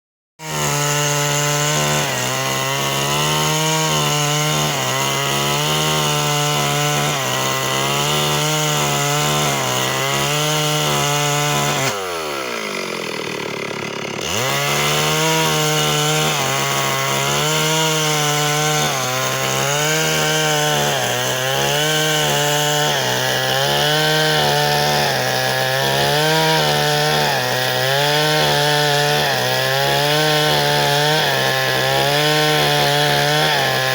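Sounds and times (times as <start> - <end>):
chainsaw cutting wood: 0.4 - 33.9.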